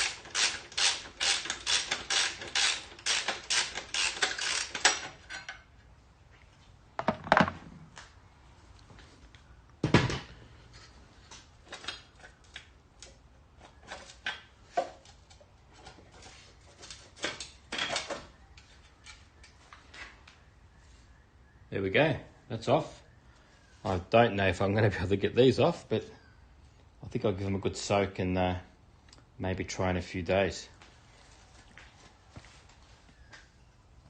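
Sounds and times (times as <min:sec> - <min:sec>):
ratchet wrench clicking: 0:00.0 - 0:05.1.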